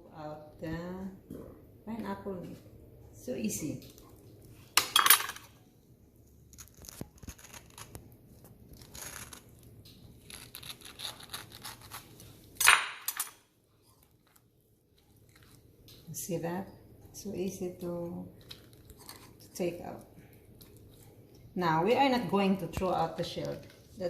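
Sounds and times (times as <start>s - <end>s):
wet scraping and tearing of fruit: 6.3s - 12.6s, 13.8s - 16.2s, 17.8s - 21.6s.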